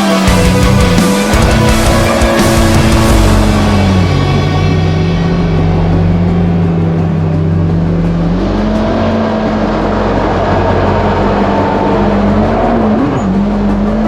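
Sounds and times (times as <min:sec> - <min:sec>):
jet ski engine running: 0:00.0 - 0:14.0.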